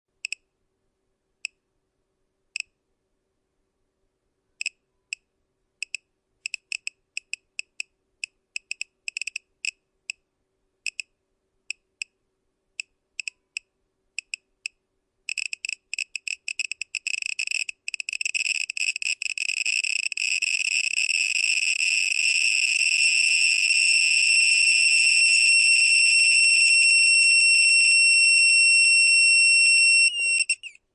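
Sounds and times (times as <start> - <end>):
geiger counter clicking: 5.8 - 10.2, 10.9 - 11.1, 12.8 - 24.0.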